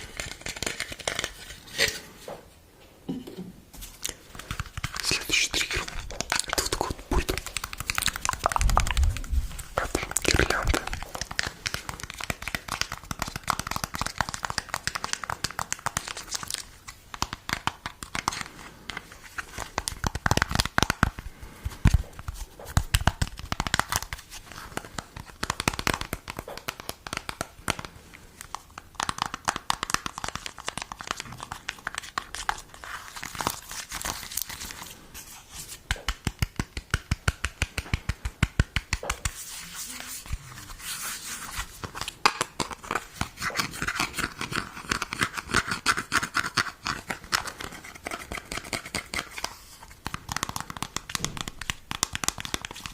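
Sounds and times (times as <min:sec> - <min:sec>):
crinkling and crackling: 0:03.8 - 0:36.2.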